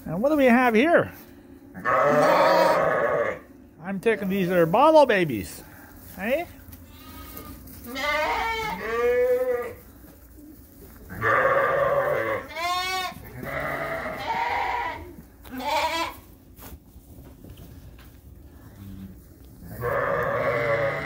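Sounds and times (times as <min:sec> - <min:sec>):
lambs bleating: 0:01.8 - 0:03.4, 0:06.8 - 0:09.8, 0:11.1 - 0:16.2, 0:19.7 - 0:21.0.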